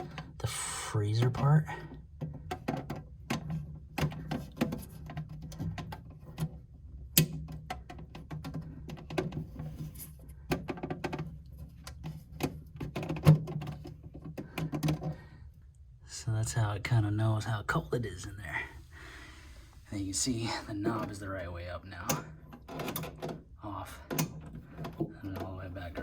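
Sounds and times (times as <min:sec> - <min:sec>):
low steady hum: 0:15.2 - 0:26.0.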